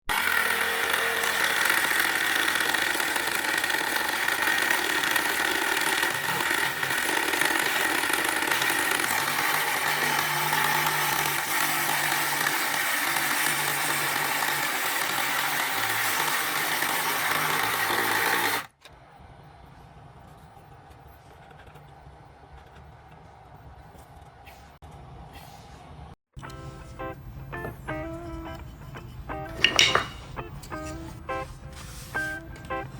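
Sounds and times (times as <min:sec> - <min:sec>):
scroll saw motor whining: 0:00.1 - 0:18.7.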